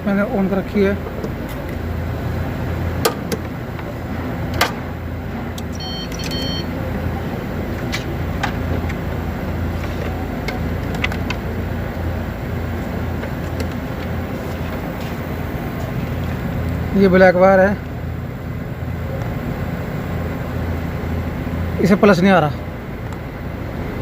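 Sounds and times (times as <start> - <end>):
low mechanical hum: 0.0 - 24.0
high electronic beeps: 5.7 - 6.8.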